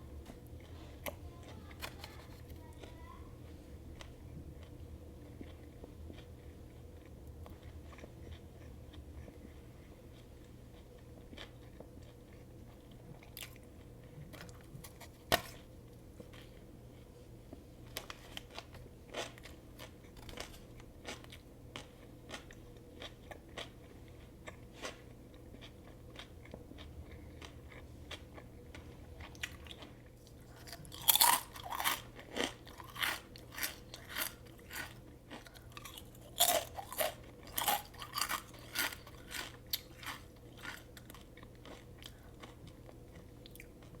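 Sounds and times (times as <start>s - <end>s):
chewing: 4.0s - 15.6s, 18.0s - 44.0s
loud crunchy bites: 30.6s - 35.0s, 35.7s - 40.9s.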